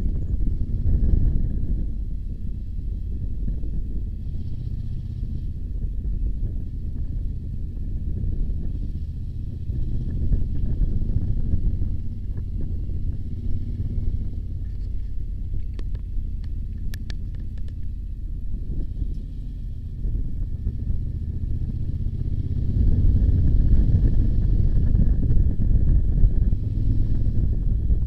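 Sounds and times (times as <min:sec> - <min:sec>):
wind buffeting microphone: 0:00.0 - 0:28.0
faint clicks: 0:14.6 - 0:18.0.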